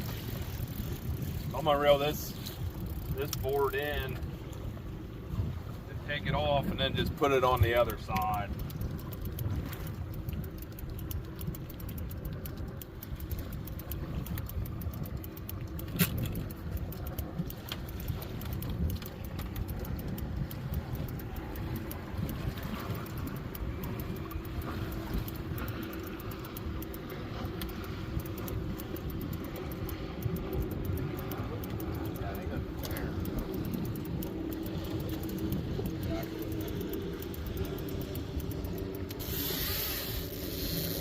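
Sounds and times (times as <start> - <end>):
boat motor running: 0.0 - 41.0
sharp click: 6.9 - 41.0.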